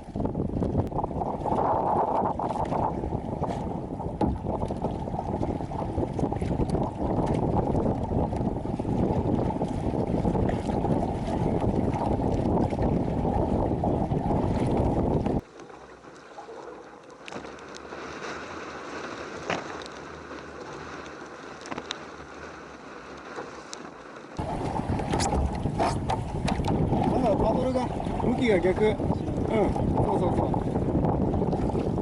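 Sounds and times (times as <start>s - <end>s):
wind buffeting microphone: 0.0s - 15.4s, 24.4s - 32.0s
small water splashes: 0.0s - 30.8s.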